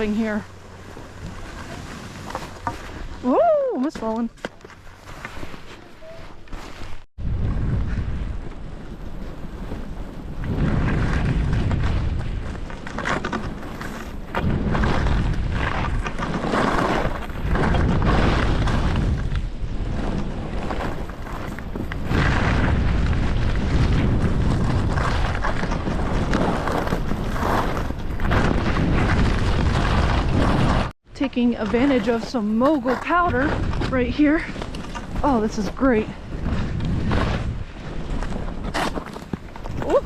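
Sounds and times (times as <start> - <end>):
wind buffeting microphone: 7.2 - 12.8, 14.1 - 40.0.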